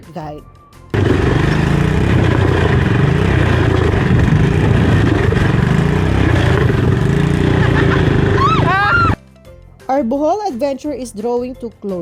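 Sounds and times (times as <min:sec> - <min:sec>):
atv engine running: 0:00.9 - 0:09.2.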